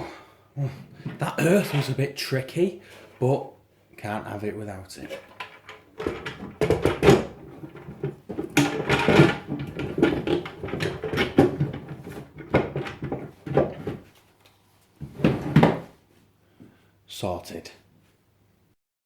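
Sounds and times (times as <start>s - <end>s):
clattering and knocking on plastic: 0.8s - 1.9s, 5.0s - 14.1s, 15.0s - 15.9s
rustling of wiring: 4.9s - 16.0s.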